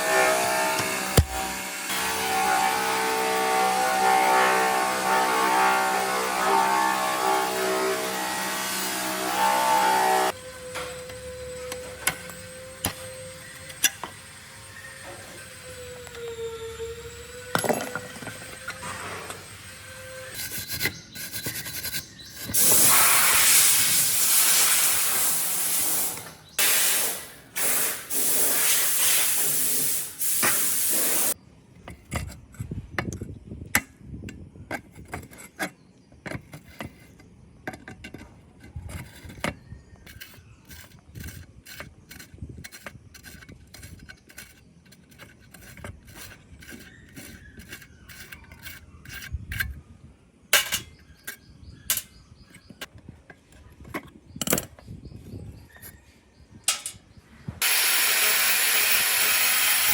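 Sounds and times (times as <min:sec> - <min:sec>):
hand tools clicking and scraping: 0:00.0 - 0:59.9
loud hissing spray: 0:22.6 - 0:31.4.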